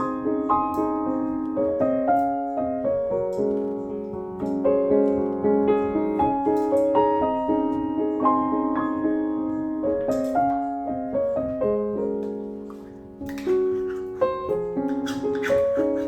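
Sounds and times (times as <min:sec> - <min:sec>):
piano melody over held chords: 0:00.0 - 0:16.0.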